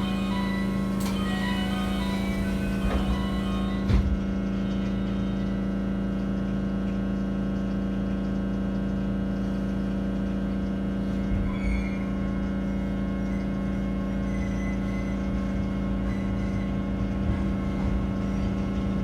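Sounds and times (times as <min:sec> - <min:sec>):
electric train humming: 0:00.0 - 0:06.9, 0:11.1 - 0:19.0.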